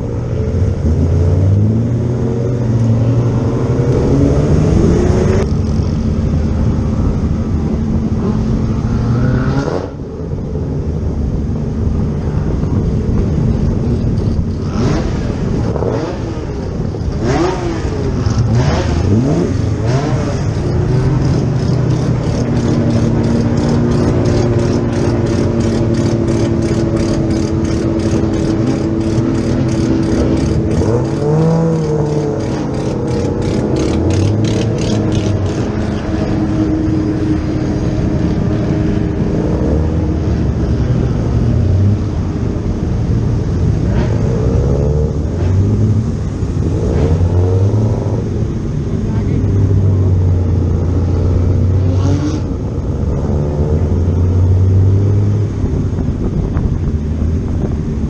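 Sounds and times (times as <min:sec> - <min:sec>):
racing car engines revving: 0:00.0 - 0:58.0
fast even ticking: 0:20.6 - 0:36.0.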